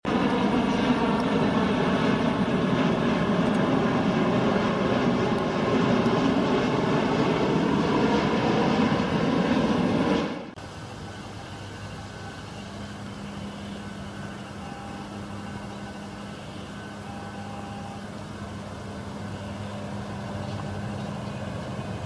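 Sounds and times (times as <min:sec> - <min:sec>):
jet engine roar: 0:00.0 - 0:22.0.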